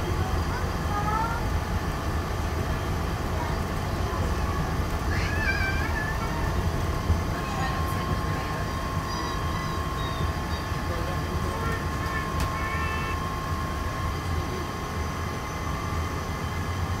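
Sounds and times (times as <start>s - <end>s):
monorail rumbling: 0.0s - 17.0s
thin whine: 7.4s - 17.0s.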